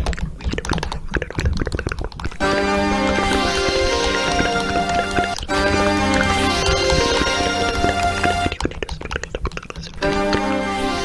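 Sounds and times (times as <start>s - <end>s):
held musical chord: 2.4s - 8.6s, 10.0s - 11.0s
rapid run of clicks: 3.1s - 10.0s.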